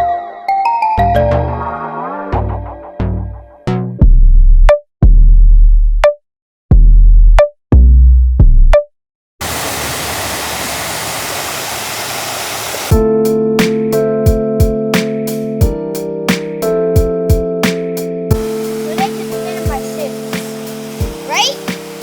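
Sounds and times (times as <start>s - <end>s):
guitar-led music: 18.3s - 22.0s.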